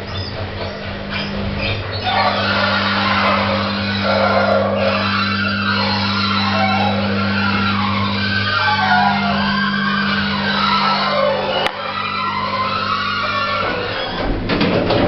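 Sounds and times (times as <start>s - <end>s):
lift motor humming: 0.0s - 15.0s.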